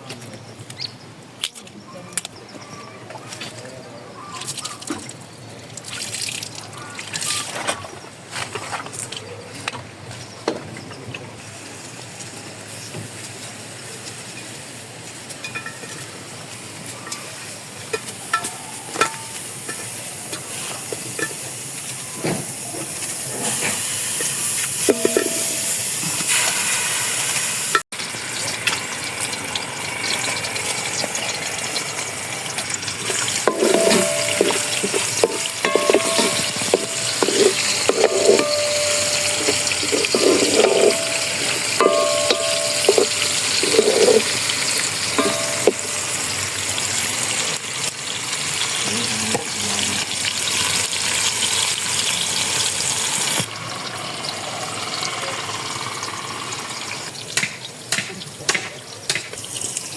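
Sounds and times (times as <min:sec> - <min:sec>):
food sizzling in a pot: 0:11.5 - 0:57.5, 0:58.6 - 0:59.9
utensil knocking against pot: 0:24.9 - 0:25.8, 0:33.4 - 0:44.5, 0:45.2 - 0:46.4.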